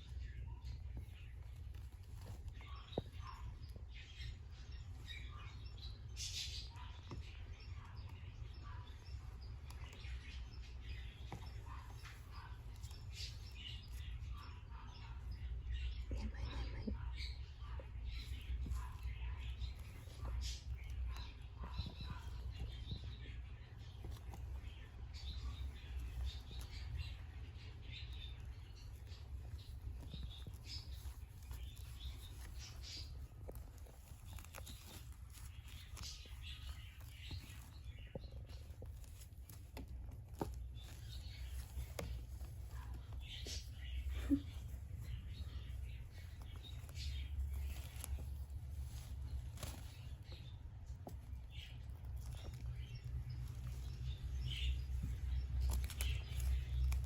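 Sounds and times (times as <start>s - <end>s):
kittens chirping: 0.0s - 57.0s
kittens scuffling on bedding: 0.0s - 57.0s.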